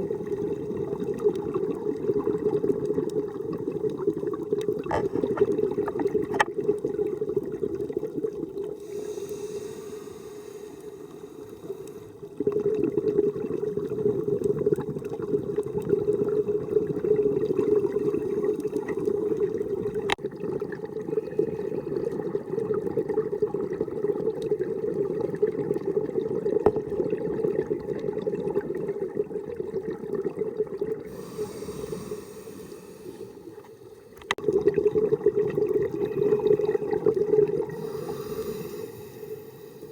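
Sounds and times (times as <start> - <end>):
exhaled bubbles underwater: 0.0 - 39.9
faint hissing inhale: 8.7 - 12.4, 18.0 - 18.9, 31.0 - 34.4, 37.6 - 39.9.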